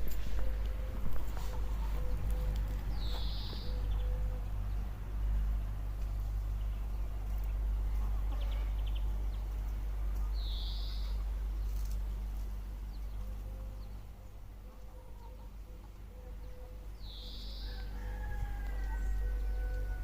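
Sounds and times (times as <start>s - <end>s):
steady low rumble: 0.0s - 20.0s
high-pitched bird calls: 0.3s - 4.6s, 10.4s - 11.9s, 15.2s - 18.0s.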